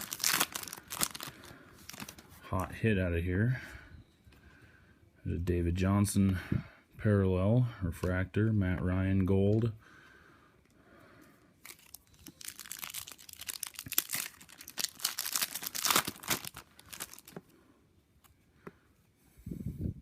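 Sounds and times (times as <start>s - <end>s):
wrapper tearing and crinkling: 0.0s - 2.2s, 11.6s - 17.4s
cards being handled: 0.0s - 2.4s, 11.6s - 17.5s.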